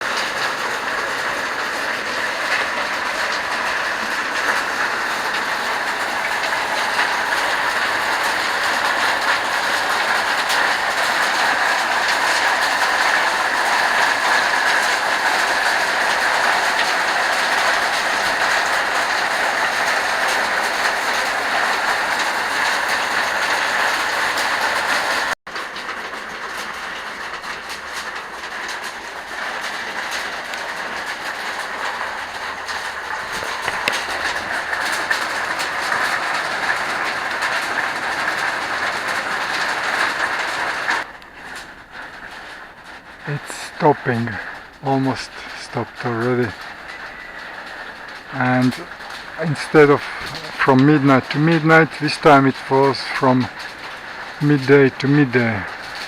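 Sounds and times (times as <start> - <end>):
waterfall rushing: 0.0 - 25.4, 29.3 - 41.1, 43.2 - 56.0.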